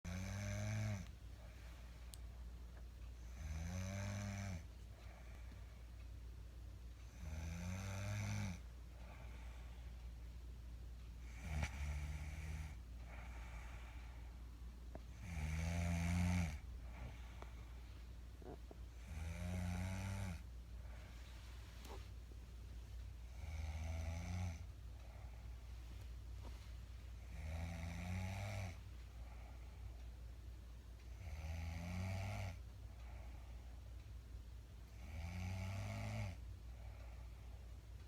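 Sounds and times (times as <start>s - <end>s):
woman snoring: 0.1s - 1.1s, 3.2s - 4.7s, 7.1s - 8.6s, 11.3s - 13.4s, 15.1s - 17.2s, 18.4s - 20.5s, 23.3s - 24.6s, 27.2s - 28.8s, 31.2s - 32.6s, 35.0s - 36.4s
quiet breathing: 0.1s - 38.0s.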